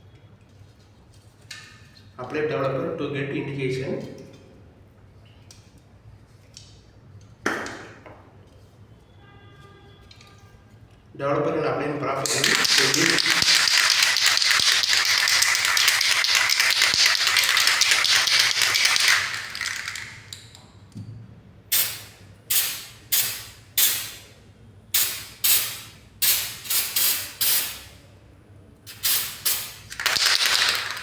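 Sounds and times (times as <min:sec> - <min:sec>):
aerosol can spraying: 0:12.3 - 0:20.2, 0:21.7 - 0:24.2, 0:25.0 - 0:27.9, 0:28.9 - 0:31.0.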